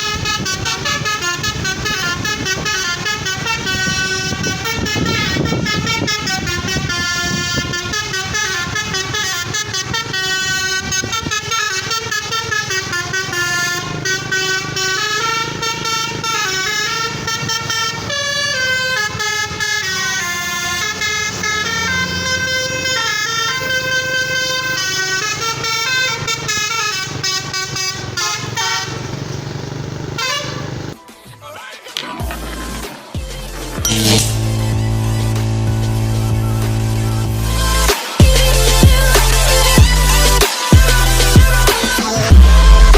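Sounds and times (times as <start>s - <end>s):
musical air horn melody: 0.0s - 29.2s, 30.2s - 30.7s, 33.7s - 42.9s
bus engine rumbling: 0.0s - 31.0s, 33.8s - 42.9s.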